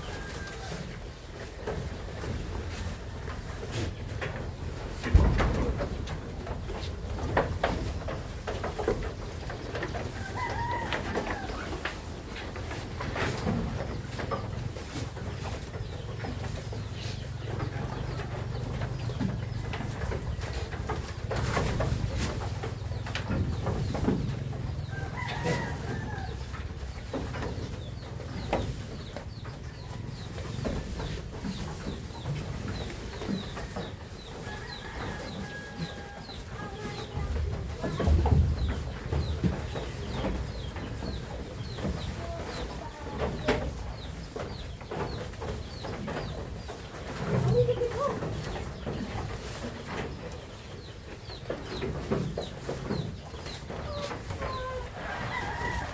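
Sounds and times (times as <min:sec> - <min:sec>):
rooster crowing: 0:00.0 - 0:00.8, 0:10.2 - 0:11.7, 0:24.9 - 0:26.4, 0:54.5 - 0:55.9
chickens clucking: 0:00.0 - 0:55.9
scattered knocks: 0:04.2 - 0:10.0
small birds chirping: 0:05.5 - 0:55.9.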